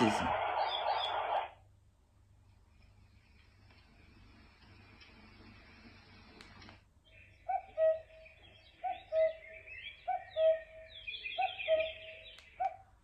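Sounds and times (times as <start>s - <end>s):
high bird chirping: 7.0s - 12.8s.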